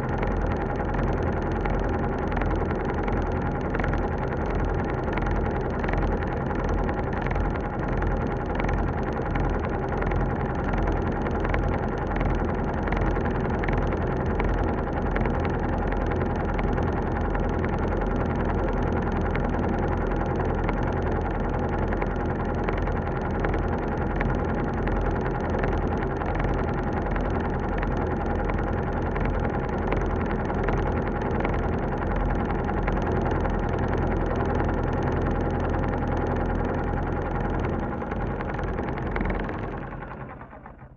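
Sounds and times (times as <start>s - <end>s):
elevator mechanical hum: 23.4s - 40.9s.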